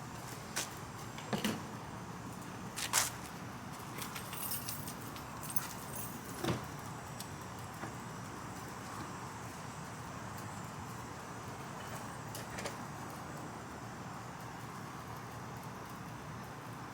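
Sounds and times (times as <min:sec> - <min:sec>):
metallic jingle of small parts: 0:04.0 - 0:06.4.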